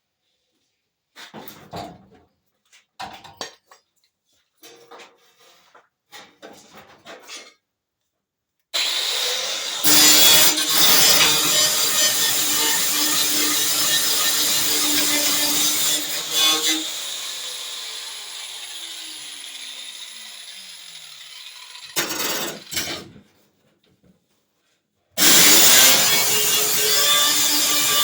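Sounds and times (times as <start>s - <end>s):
power grinder on sheet metal: 8.8s - 23.0s, 25.2s - 28.0s.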